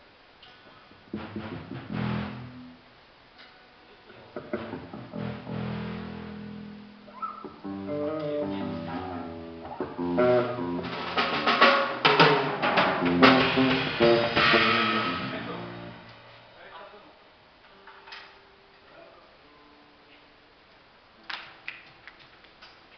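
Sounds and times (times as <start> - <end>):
drum kit: 1.0 - 16.3
electric guitar playing: 1.1 - 2.9, 4.2 - 16.4
cymbals crashing: 10.9 - 16.1.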